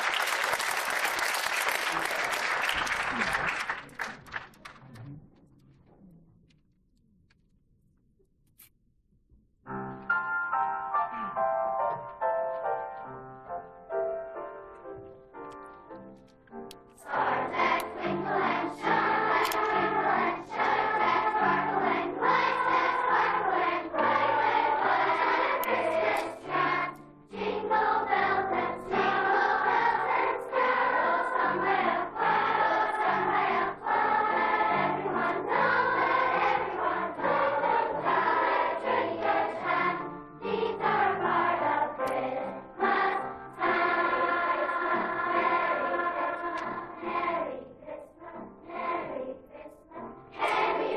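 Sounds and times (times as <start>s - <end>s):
piano accompaniment: 9.7s - 50.9s
children's choir singing: 17.0s - 50.9s.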